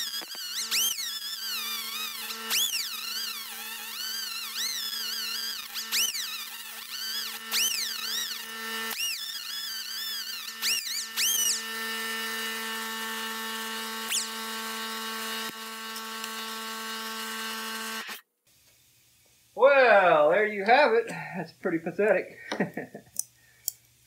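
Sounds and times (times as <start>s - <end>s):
air die grinder whining: 0.0s - 18.2s.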